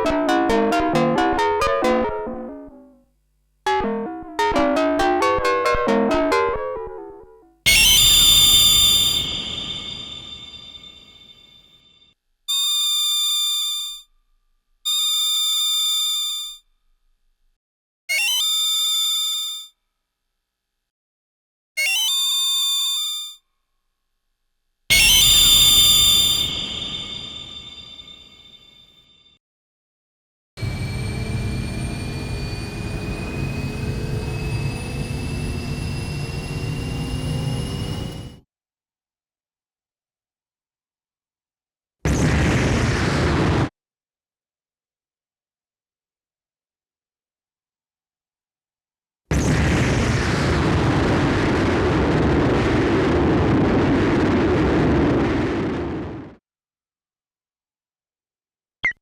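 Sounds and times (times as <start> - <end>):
analog synthesizer tones: 0.0 - 3.0, 3.7 - 8.2
thin high rising whine: 30.6 - 38.4.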